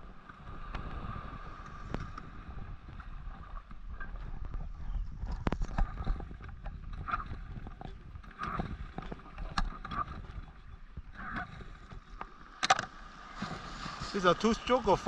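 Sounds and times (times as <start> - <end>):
wind rumbling on microphone: 0.0 - 15.0
water splashing: 11.1 - 15.0.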